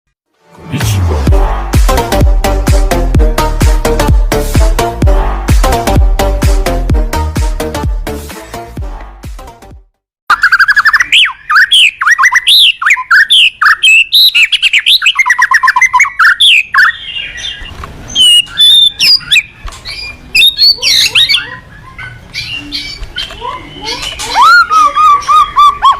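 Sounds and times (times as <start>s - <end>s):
bird singing whistles and trills: 10.3s - 25.7s.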